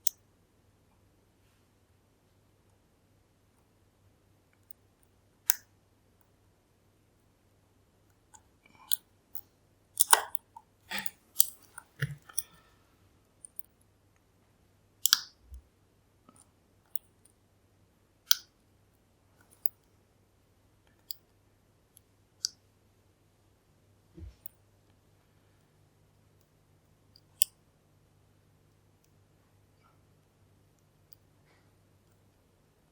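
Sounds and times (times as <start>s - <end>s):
lock picks clicking in lock: 10.0s - 12.6s, 15.0s - 15.3s, 18.3s - 18.5s.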